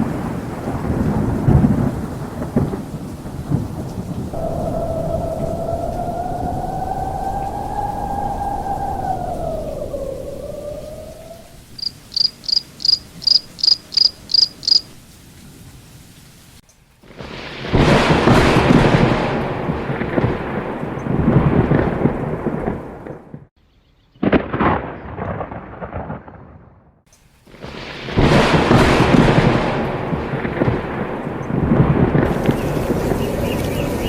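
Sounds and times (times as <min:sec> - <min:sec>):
sharp thunder clap: 0:00.0 - 0:11.4, 0:17.0 - 0:23.5, 0:24.2 - 0:34.0
rolling thunder: 0:00.0 - 0:12.2, 0:17.0 - 0:23.5, 0:24.2 - 0:34.0
rain: 0:00.0 - 0:23.5, 0:24.3 - 0:34.0
high chirps: 0:10.5 - 0:15.0.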